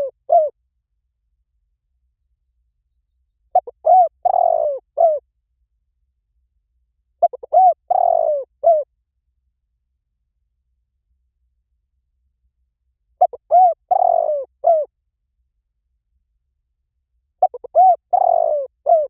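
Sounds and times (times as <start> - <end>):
dove cooing: 0.0 - 0.5, 3.5 - 5.2, 7.2 - 8.9, 13.2 - 14.9, 17.4 - 19.0.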